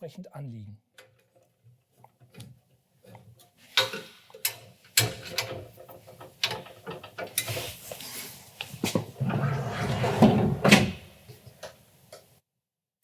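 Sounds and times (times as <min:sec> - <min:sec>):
sliding rattle of metal runners: 0:03.7 - 0:11.3
metal frame clicks and knocks: 0:03.8 - 0:07.5.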